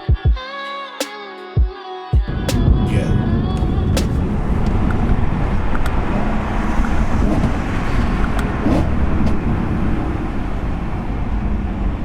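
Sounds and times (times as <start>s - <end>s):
car engine and road noise: 2.4s - 12.0s.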